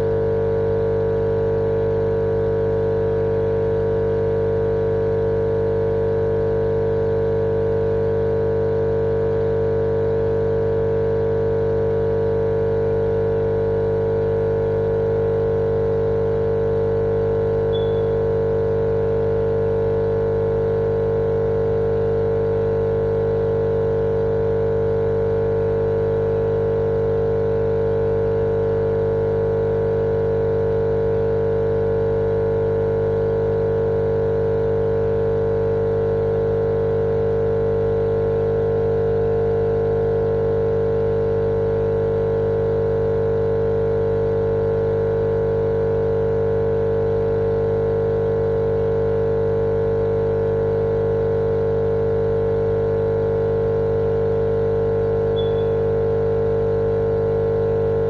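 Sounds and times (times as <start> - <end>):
steady motor hum: 15.0 - 22.9, 54.3 - 58.0.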